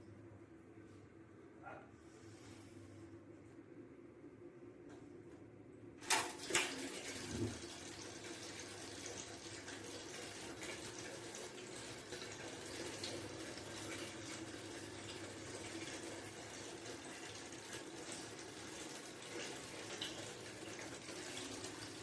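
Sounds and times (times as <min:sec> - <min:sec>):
water running from a tap: 0:06.0 - 0:22.0.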